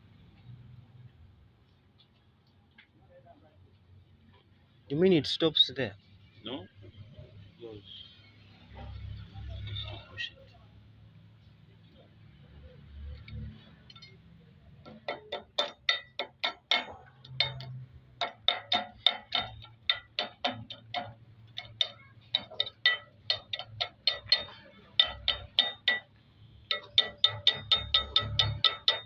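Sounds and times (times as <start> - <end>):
hammer tapping on metal: 13.3 - 29.0.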